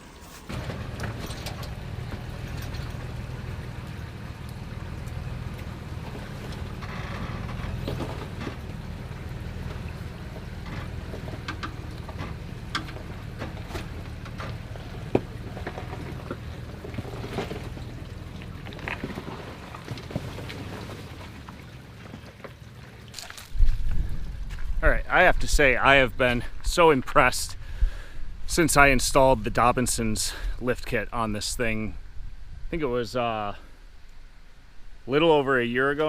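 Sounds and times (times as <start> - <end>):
truck engine running at low revs: 0.0 - 35.2
sharp clicks and knocks: 10.6 - 16.4.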